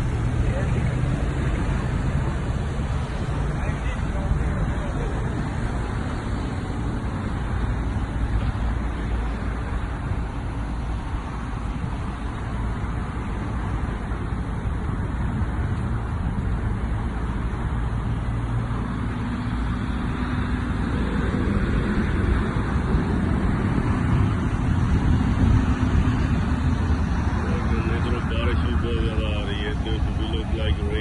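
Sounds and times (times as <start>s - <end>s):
low rumbling noise: 0.0s - 31.0s.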